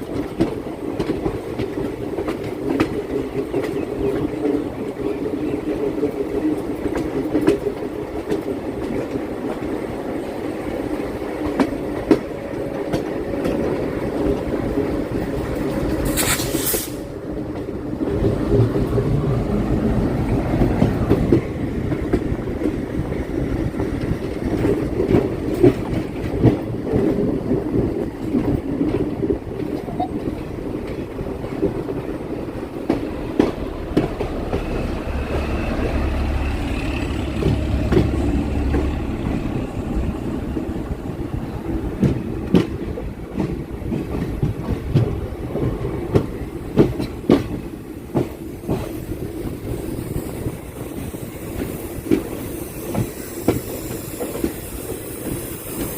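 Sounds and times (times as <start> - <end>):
wheels clicking over rail joints: 0.0 - 35.0, 36.6 - 55.9
electric train on rails: 0.0 - 55.9
brief hiss: 16.0 - 17.1.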